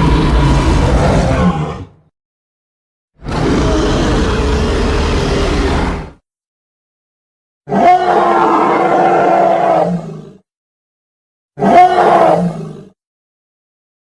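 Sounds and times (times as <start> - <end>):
gorilla roar: 0.0 - 2.0, 3.2 - 6.1, 7.7 - 10.4, 11.6 - 13.0.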